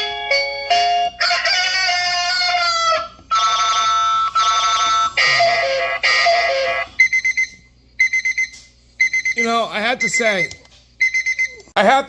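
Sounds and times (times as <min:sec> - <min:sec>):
alarm clock ringtone melody: 0:00.0 - 0:02.7, 0:03.3 - 0:11.6
rapid high beeps: 0:04.4 - 0:11.6.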